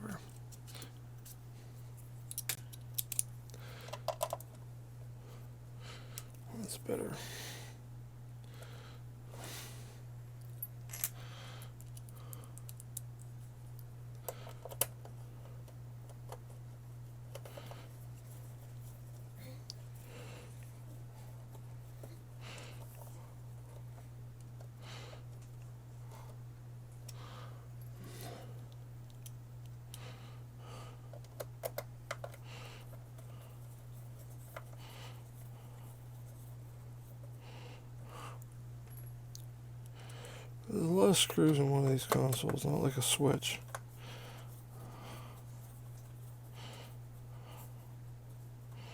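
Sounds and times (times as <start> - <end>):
steady low hum: 0.0 - 48.9.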